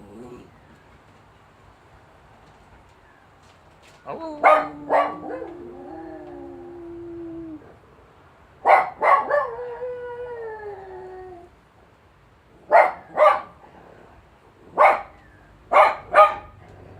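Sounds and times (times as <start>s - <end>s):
dog howling: 4.1s - 7.8s
dog barking: 4.4s - 5.5s, 8.6s - 9.6s, 12.7s - 13.6s, 14.7s - 16.6s.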